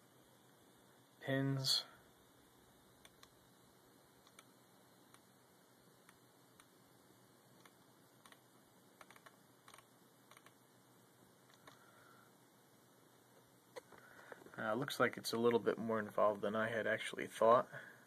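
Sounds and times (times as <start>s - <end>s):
faint clicks: 11.5s - 11.8s.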